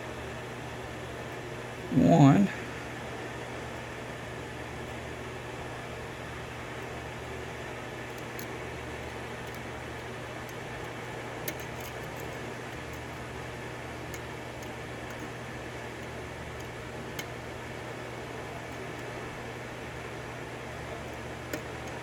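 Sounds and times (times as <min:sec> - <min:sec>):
steady fan-like hum: 0:00.0 - 0:22.0
lock pick clicking in a lock: 0:11.4 - 0:13.0.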